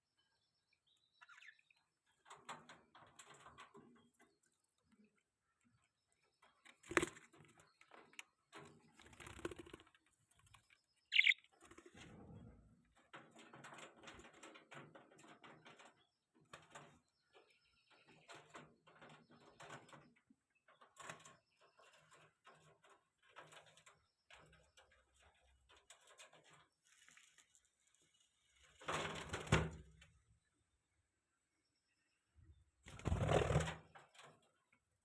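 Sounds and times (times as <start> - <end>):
budgerigars chirping and chattering: 11.1 - 11.4.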